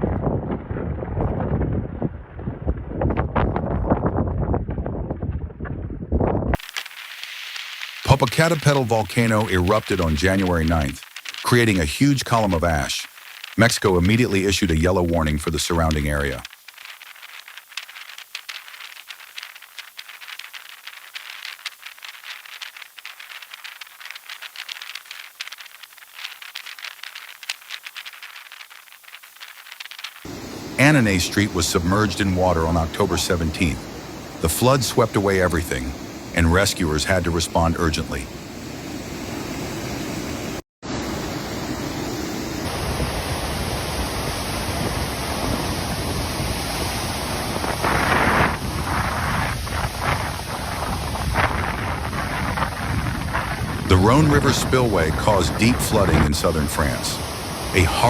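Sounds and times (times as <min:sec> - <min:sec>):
patter of sharp ticks and rattles: 0:06.6 - 0:14.2, 0:15.7 - 0:30.3, 0:48.1 - 0:53.9
floodwater rushing: 0:06.6 - 0:26.8, 0:30.0 - 0:58.0.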